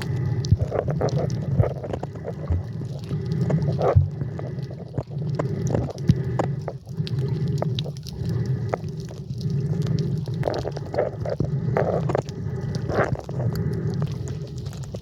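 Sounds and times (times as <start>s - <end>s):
bubbling gurgles: 0.0s - 15.0s
sharp underwater clicks: 0.0s - 15.0s.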